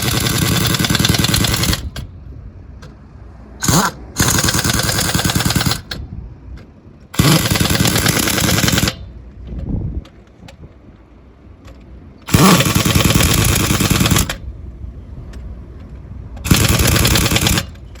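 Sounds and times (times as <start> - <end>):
pneumatic impact wrench rattling: 0.0 - 2.1, 3.6 - 6.1, 7.1 - 9.2, 12.2 - 14.4, 16.4 - 18.0.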